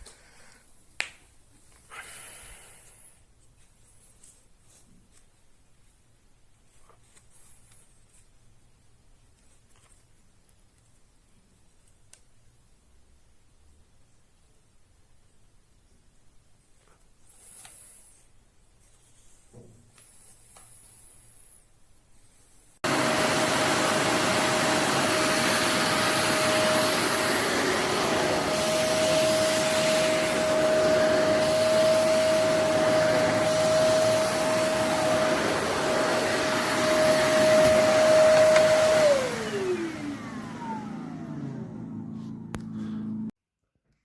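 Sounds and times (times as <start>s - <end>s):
vacuum cleaner running: 22.8s - 43.3s.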